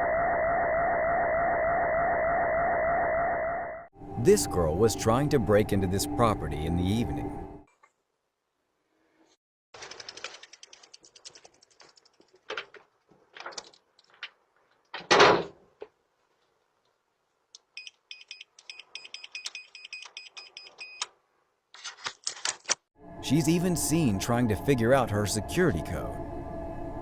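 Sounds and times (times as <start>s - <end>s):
keypad beeps: 17.8s - 21.1s.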